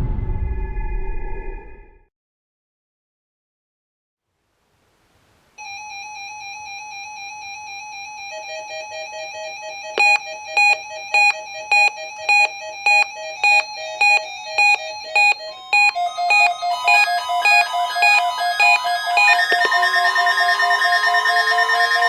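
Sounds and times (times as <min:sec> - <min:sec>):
steady pulsing alarm tone: 0:05.6 - 0:22.0
loud alarm beeps: 0:09.8 - 0:22.0
fast beeping tone: 0:10.0 - 0:22.0.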